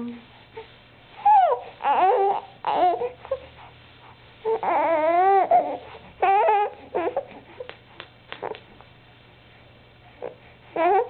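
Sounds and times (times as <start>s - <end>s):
baby babbling: 1.2s - 3.4s, 4.5s - 7.4s, 10.2s - 11.0s.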